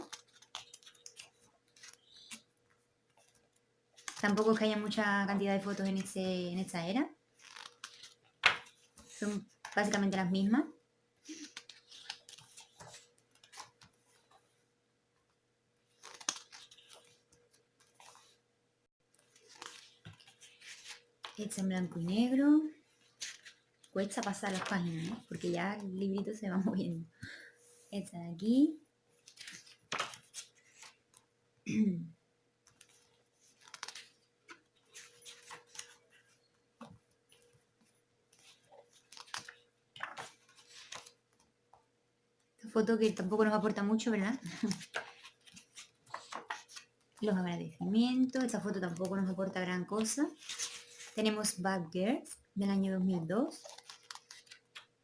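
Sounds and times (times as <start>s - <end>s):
paper pages rustling: 0.0s - 2.5s, 3.1s - 6.2s, 7.3s - 10.2s, 11.2s - 14.4s, 15.9s - 18.4s, 19.1s - 22.3s, 22.9s - 26.4s, 29.2s - 31.3s, 32.7s - 41.5s, 43.0s - 47.4s, 48.3s - 51.6s, 53.5s - 55.0s.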